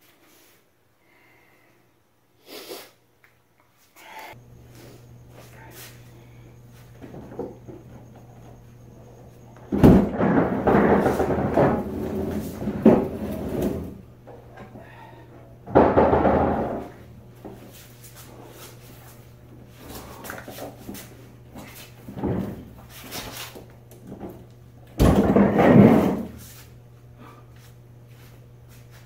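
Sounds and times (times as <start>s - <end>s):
refrigerator scraping and knocking: 7.0s - 14.1s, 15.6s - 17.7s, 21.6s - 26.6s.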